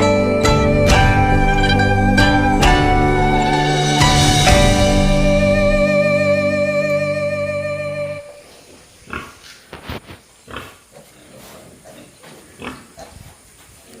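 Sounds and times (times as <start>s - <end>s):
background music: 0.0s - 8.4s
pigs grunting: 9.0s - 9.7s, 10.4s - 14.0s.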